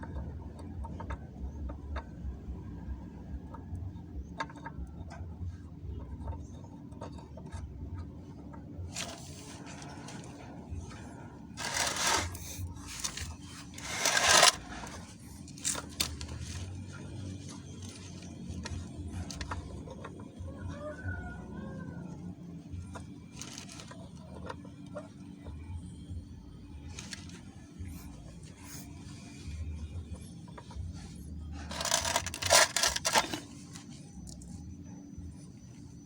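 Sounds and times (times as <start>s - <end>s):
low steady hum: 0.0s - 36.0s
small clicks and knocks on metal: 3.4s - 9.1s
loud metal scrapes: 11.6s - 16.2s.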